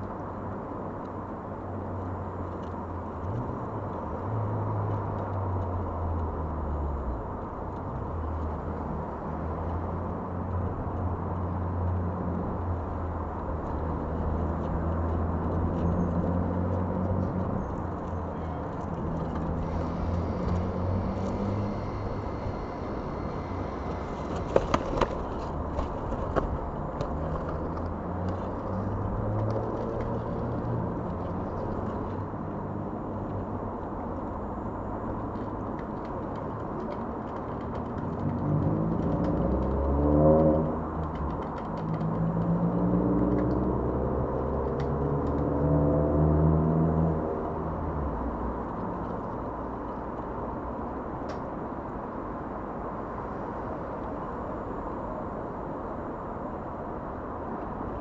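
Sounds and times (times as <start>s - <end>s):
droning hum shifting in pitch: 16.4s - 25.6s
low rumble: 17.1s - 29.4s.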